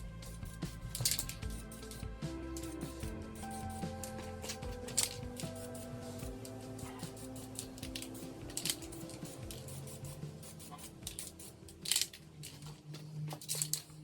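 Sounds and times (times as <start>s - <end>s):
faint background music: 0.0s - 14.0s
spray paint can hissing: 0.2s - 4.0s, 5.4s - 6.2s, 6.8s - 12.2s.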